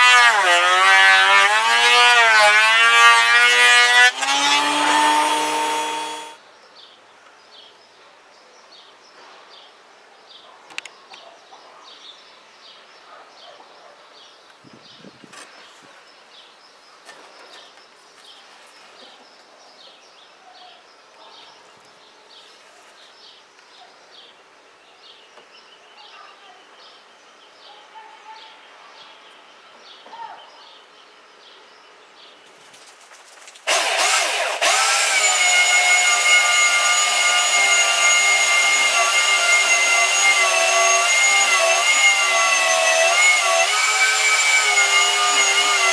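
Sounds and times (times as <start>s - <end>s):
woodworking machine motor whining: 0.0s - 6.4s, 33.7s - 45.9s.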